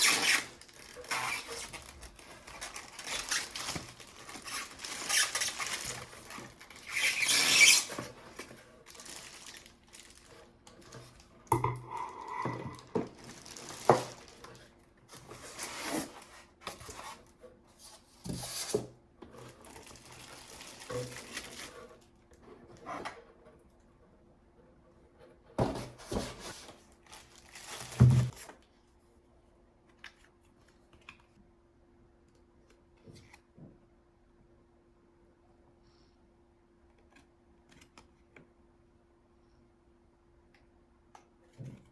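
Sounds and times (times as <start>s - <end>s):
packaging rustling and scraping: 0.0s - 23.2s, 25.6s - 28.6s.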